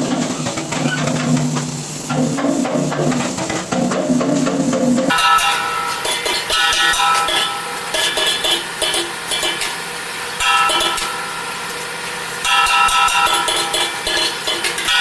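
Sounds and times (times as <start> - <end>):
background music with percussive beat: 1.3 - 7.1.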